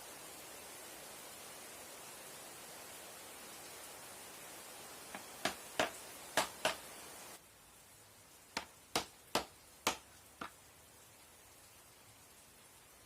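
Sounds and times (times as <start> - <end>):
hammer tapping nail: 5.2 - 6.8, 8.6 - 10.5.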